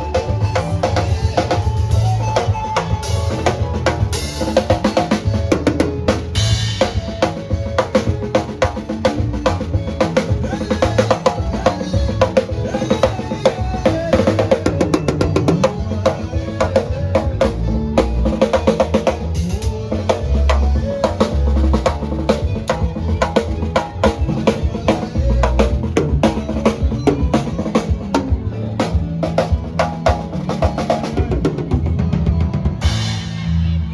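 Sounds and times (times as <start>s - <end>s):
drum kit beat: 0.0s - 33.9s.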